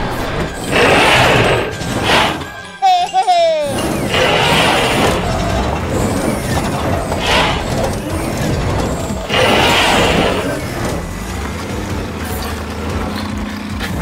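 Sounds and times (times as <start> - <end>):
loud noisy rushes: 0.0 - 2.7, 3.7 - 12.0
heavy machinery rumble: 0.0 - 2.8, 3.6 - 14.0.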